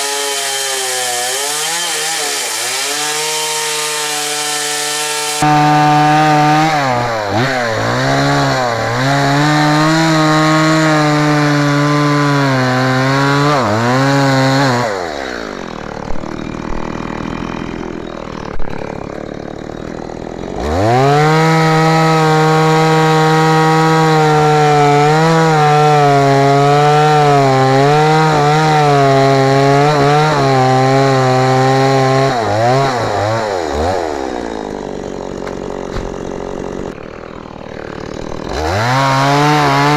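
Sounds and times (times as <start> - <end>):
chainsaw cutting wood: 0.0 - 39.9
short knocks: 35.4 - 36.2.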